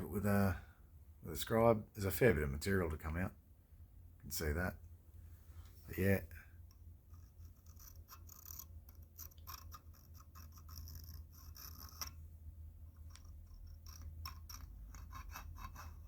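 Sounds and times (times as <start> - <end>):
steady low hum: 0.0 - 16.0
scribe scratching metal: 6.7 - 12.3, 12.9 - 16.0.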